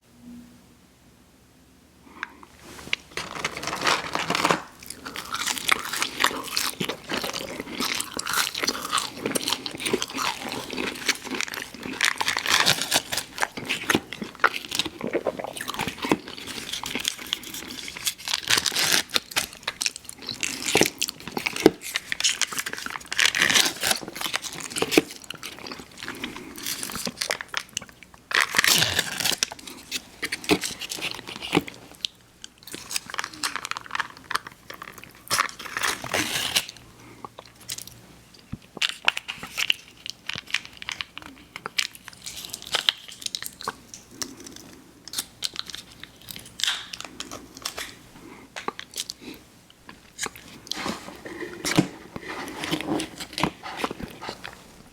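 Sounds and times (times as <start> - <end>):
chewing crunchy food: 2.2 - 54.9.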